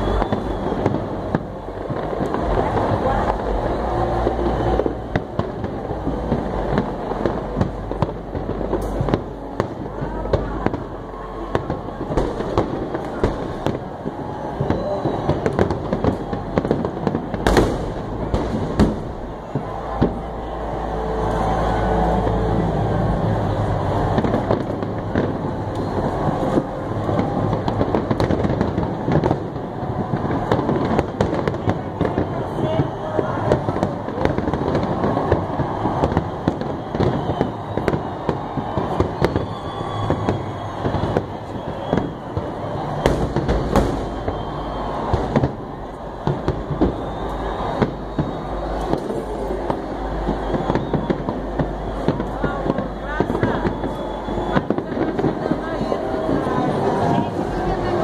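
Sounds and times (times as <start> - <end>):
fireworks bangs and crackles: 0.0 - 58.0
rumble of distant fireworks: 0.0 - 58.0.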